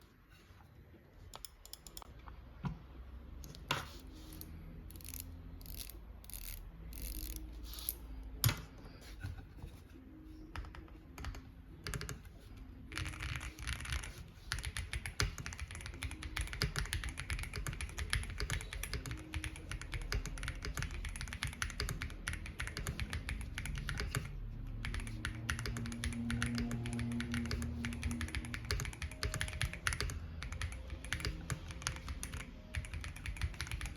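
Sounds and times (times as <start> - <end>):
mechanical keyboard typing: 10.6 - 33.9.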